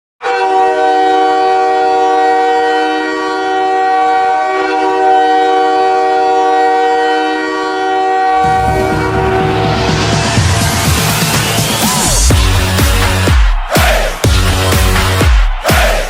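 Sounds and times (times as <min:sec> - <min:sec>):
arena goal horn blast: 0:00.2 - 0:10.9.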